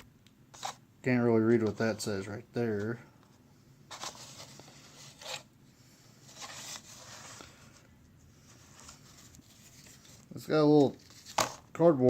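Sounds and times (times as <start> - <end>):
cardboard rustling and scraping: 3.9 - 5.5, 6.2 - 11.7.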